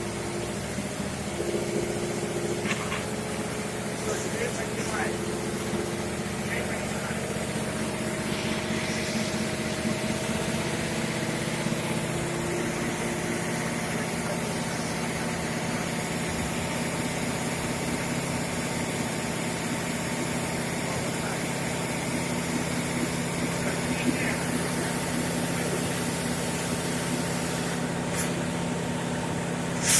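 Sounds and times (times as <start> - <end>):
pump engine humming: 0.0 - 29.9
water hissing: 7.1 - 12.2.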